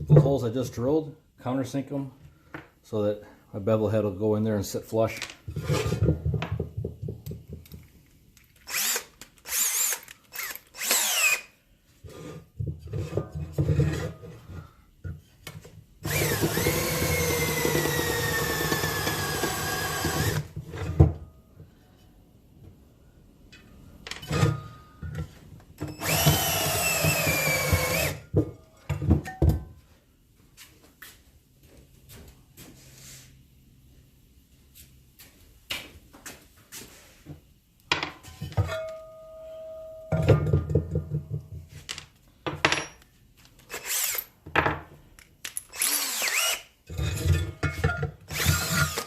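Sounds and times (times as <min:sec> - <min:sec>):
power drill running: 0:08.7 - 0:11.5, 0:16.0 - 0:20.5, 0:25.9 - 0:28.2, 0:43.8 - 0:44.2, 0:45.8 - 0:46.6, 0:48.3 - 0:49.0.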